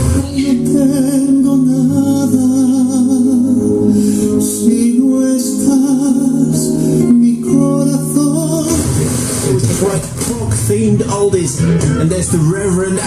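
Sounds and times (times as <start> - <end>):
person singing held wavering notes: 0.0 - 10.2
song on radio loudspeakers: 0.0 - 13.0.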